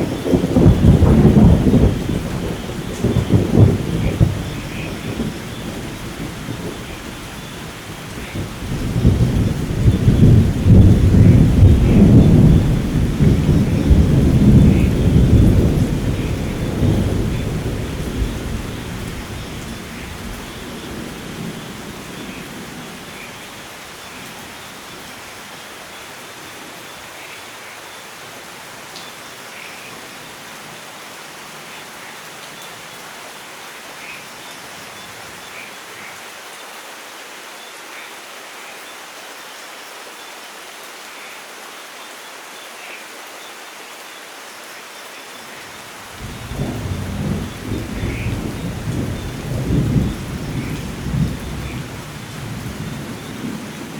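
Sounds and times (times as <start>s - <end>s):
thunder rumble: 0.0s - 7.3s, 7.9s - 23.1s, 46.1s - 53.9s
light rain: 0.0s - 53.9s.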